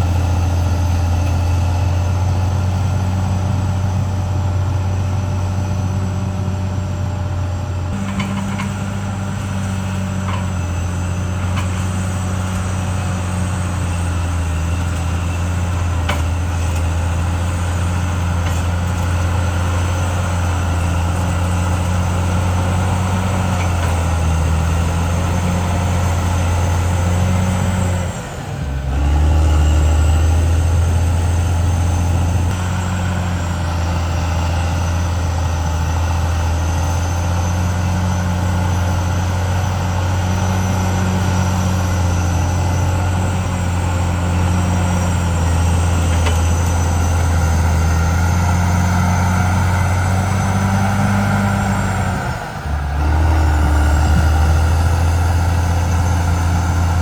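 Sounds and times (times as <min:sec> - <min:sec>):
bulldozer diesel engine: 0:00.0 - 0:57.0.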